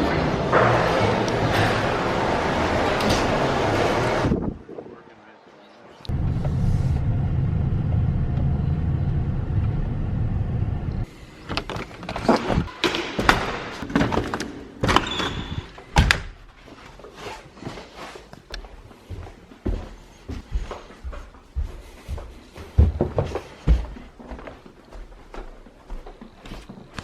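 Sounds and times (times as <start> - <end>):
engine humming: 6.1 - 11.1.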